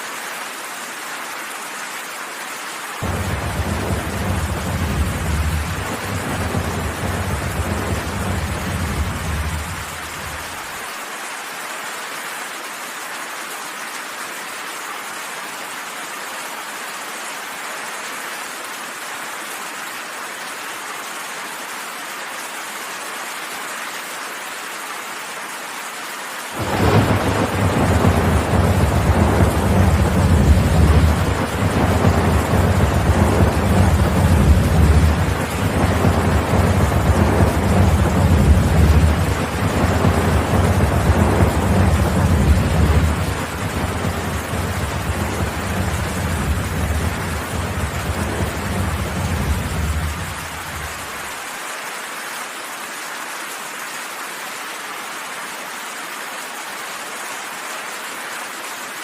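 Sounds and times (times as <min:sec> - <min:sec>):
heavy rain: 0:00.0 - 0:59.0
low thunder rumble: 0:03.0 - 0:10.7, 0:26.6 - 0:51.3.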